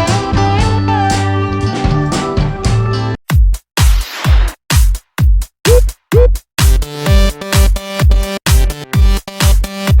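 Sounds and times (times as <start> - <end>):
deep kick drum: 5.7 - 6.4.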